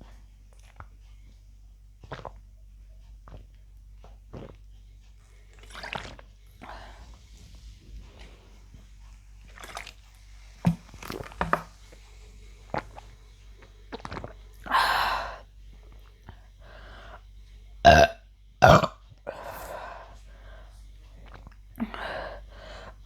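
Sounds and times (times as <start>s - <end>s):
woman burping: 17.9s - 19.6s.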